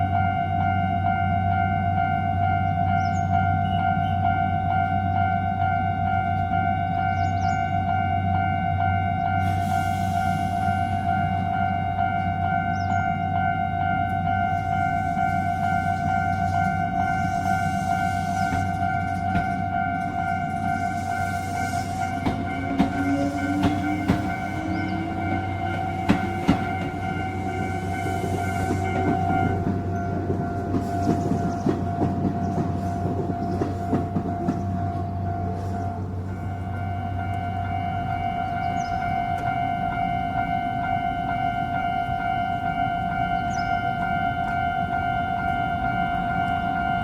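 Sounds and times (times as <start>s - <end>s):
level crossing alarm ringing: 0.0s - 47.0s
low train rumble: 0.0s - 47.0s
train wheels clacking over rail joints: 14.5s - 35.9s.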